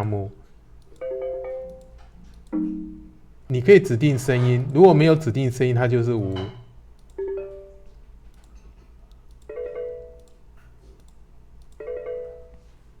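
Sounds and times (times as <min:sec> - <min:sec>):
faint mouse clicks: 0:10.2 - 0:11.8.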